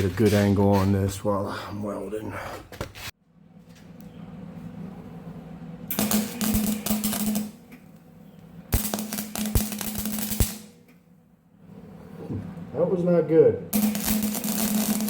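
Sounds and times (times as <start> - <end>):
steady electrical hum: 0.0 - 15.0
welding arc crackling: 5.9 - 7.8, 8.7 - 10.8, 13.7 - 15.0.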